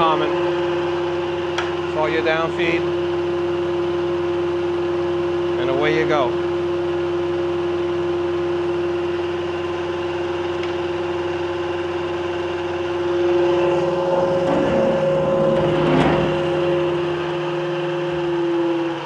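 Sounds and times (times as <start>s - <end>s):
surface grinder humming: 10.3s - 19.0s
rough grinding of steel: 13.1s - 18.8s.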